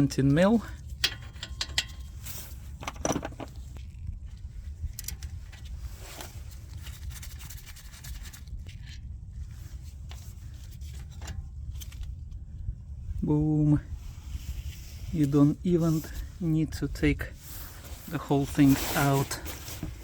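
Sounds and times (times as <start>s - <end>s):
steady low rumble: 0.0s - 20.0s
socket wrench clicks and scrapes: 0.8s - 4.0s.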